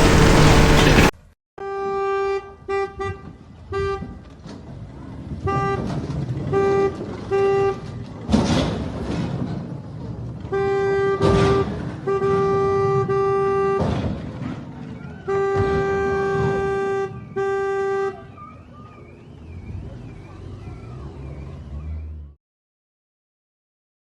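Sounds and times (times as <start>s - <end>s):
short bursts of noise: 0.0s - 1.2s
vehicle horn honking: 0.0s - 4.2s, 5.4s - 5.9s, 6.5s - 7.9s, 10.5s - 13.9s, 15.3s - 18.4s.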